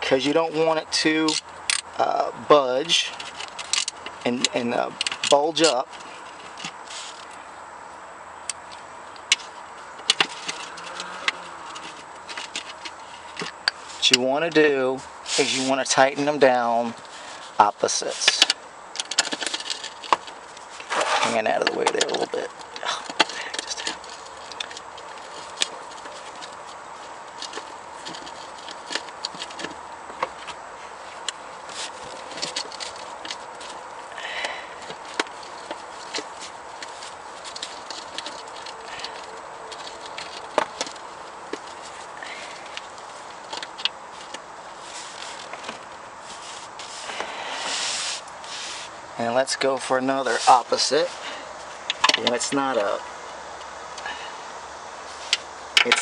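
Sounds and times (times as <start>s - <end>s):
faint steady hum: 0.0s - 56.0s
steady low hiss: 0.0s - 56.0s
bolts and tools clicking: 1.2s - 2.0s, 2.8s - 7.4s, 18.2s - 30.6s, 34.4s - 44.4s, 51.8s - 53.0s, 55.3s - 56.0s
metallic clicks of hand tools: 55.3s - 56.0s.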